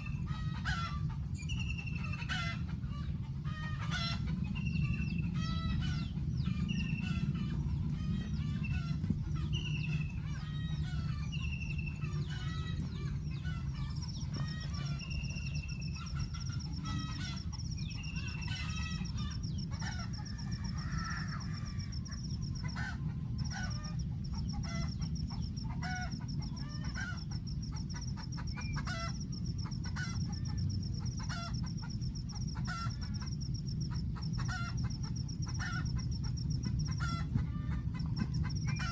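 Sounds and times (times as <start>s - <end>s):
low rumble: 0.0s - 25.7s
birds chirping: 0.0s - 38.9s
high insect-like trill: 3.9s - 38.9s.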